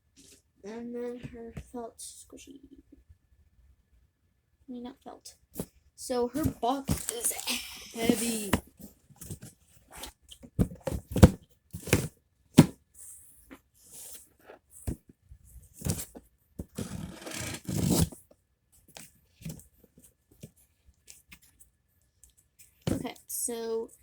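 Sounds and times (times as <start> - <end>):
box handling knocks and rustles: 6.4 - 7.4, 8.0 - 12.8, 15.8 - 18.2, 22.9 - 23.1.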